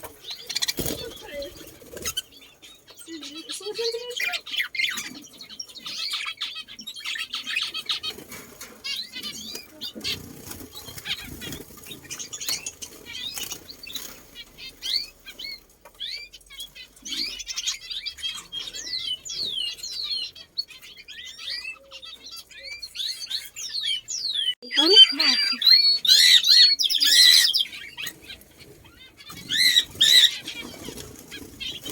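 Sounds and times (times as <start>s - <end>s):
wings flapping: 0.0s - 2.4s, 7.8s - 15.6s, 28.0s - 31.9s
small birds chirping: 0.0s - 31.9s.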